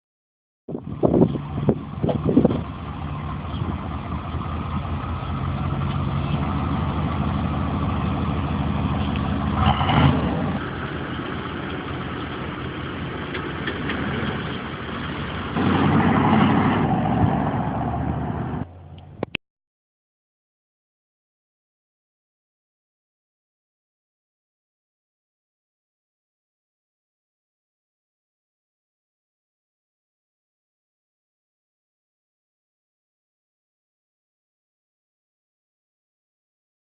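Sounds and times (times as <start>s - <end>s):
car engine exhaust: 0.8s - 19.3s.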